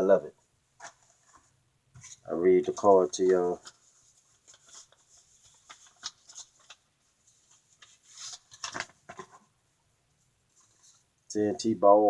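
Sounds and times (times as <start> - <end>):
paper card and envelope crackling: 0.8 - 9.4.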